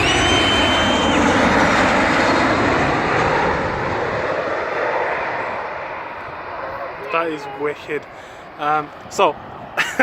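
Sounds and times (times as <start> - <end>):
high jet whistle: 0.0 - 2.3
airliner engine roar: 0.0 - 10.0.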